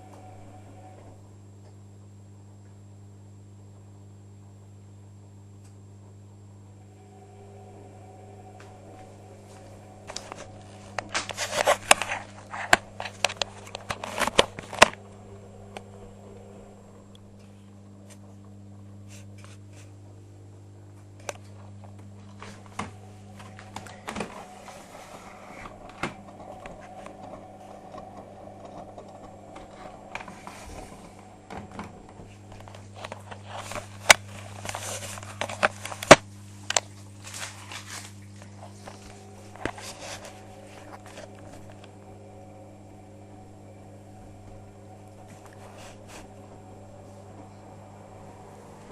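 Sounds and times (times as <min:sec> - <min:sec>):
washing machine humming: 0:00.0 - 0:48.9
washing machine clattering: 0:21.4 - 0:35.8.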